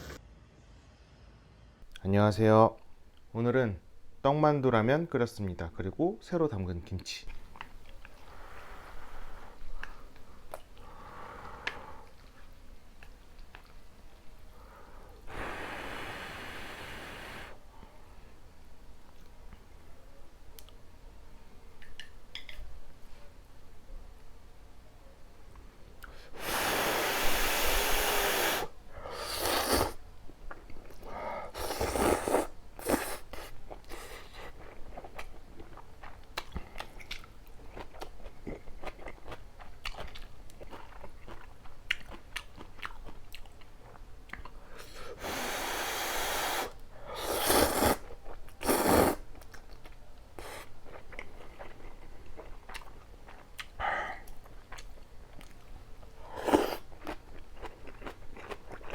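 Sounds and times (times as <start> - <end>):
loud noodle slurping: 26.4 - 30.0, 31.5 - 34.4, 45.2 - 49.3, 56.3 - 56.8
wet chewing: 29.4 - 44.9, 47.3 - 55.7, 56.3 - 58.9
small mouth clicks: 53.6 - 55.6.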